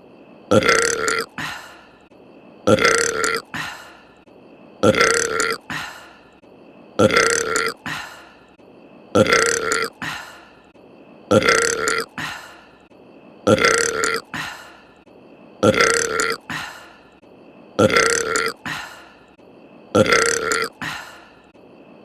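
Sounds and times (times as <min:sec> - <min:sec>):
cartoon woman burping: 0:00.5 - 0:01.6, 0:02.7 - 0:03.8, 0:04.8 - 0:05.9, 0:07.0 - 0:08.0, 0:09.2 - 0:10.2, 0:11.3 - 0:12.3, 0:13.5 - 0:14.5, 0:15.6 - 0:16.7, 0:17.8 - 0:18.8, 0:20.0 - 0:21.0.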